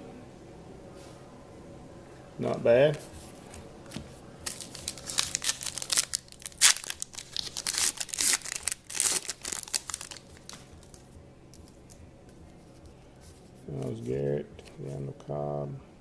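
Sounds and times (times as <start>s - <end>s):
faint handling noise: 2.4s - 8.6s, 9.2s - 15.3s
wrapper tearing and crinkling: 4.4s - 11.0s.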